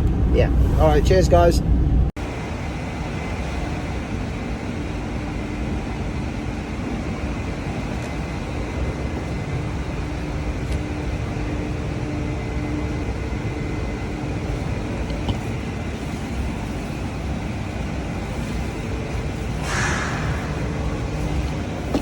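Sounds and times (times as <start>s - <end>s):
faint steady hum: 0.0s - 22.0s
road and engine noise: 0.0s - 22.0s.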